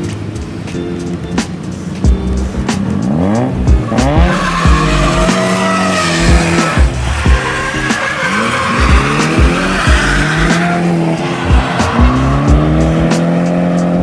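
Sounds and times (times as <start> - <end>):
rotary engine revving: 3.0 - 14.0
tyres squealing: 3.8 - 13.0.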